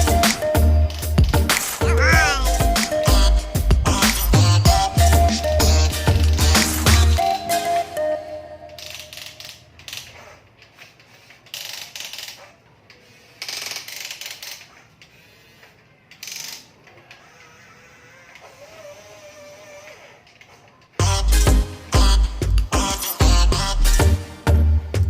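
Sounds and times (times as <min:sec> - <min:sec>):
small electric motors whirring: 0:08.8 - 0:21.0.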